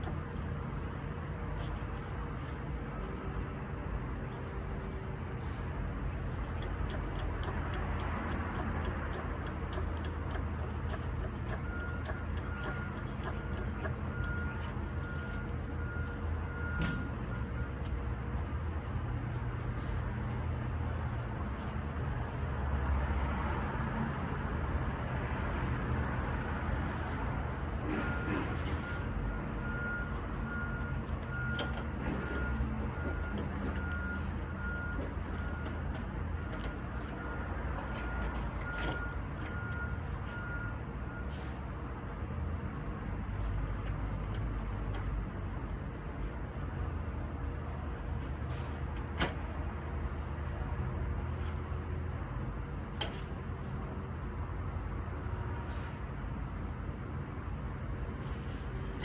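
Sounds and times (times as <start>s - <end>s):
vehicle engine idling: 0.0s - 21.8s
engine ticking: 4.2s - 16.2s
reversing alarm beeping: 11.4s - 17.9s, 28.0s - 41.4s.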